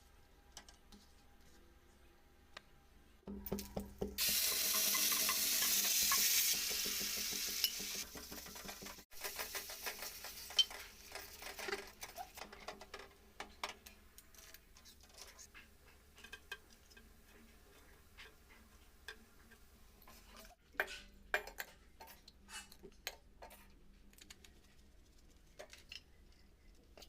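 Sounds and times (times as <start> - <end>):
steady cooking hiss: 4.2 - 11.6.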